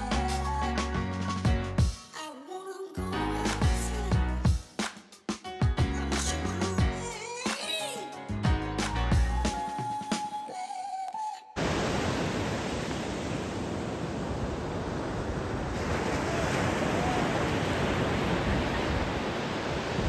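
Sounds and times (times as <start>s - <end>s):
background music: 0.0s - 11.4s
waves breaking on beach: 11.6s - 20.0s.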